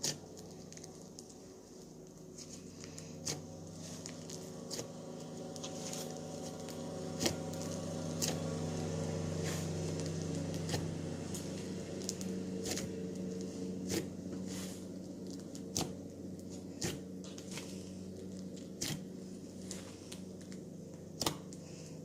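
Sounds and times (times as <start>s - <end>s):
steady low hum: 0.0s - 22.0s
slime being squished: 2.3s - 8.5s, 16.8s - 21.6s.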